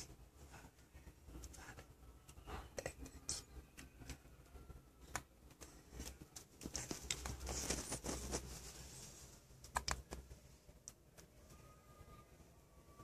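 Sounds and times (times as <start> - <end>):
soft rustling: 5.4 - 11.6.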